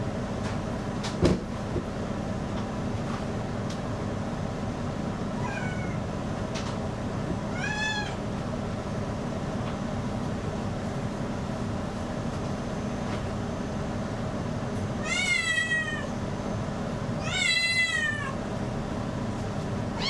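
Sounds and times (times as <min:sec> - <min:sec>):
cat meowing: 0:05.4 - 0:06.1, 0:07.5 - 0:08.2, 0:15.0 - 0:16.2, 0:17.2 - 0:18.4.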